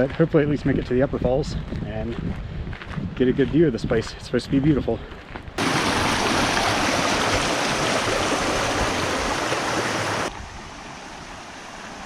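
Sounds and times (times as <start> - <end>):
creek water rushing: 5.6 - 12.0.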